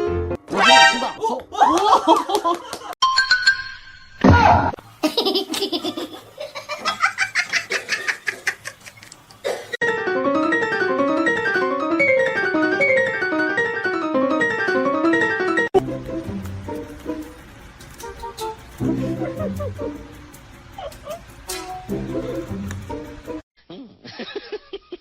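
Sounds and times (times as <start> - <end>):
rhythmic laughter: 5.0 - 9.2, 18.7 - 22.5
music with quickly repeating notes: 9.9 - 23.4.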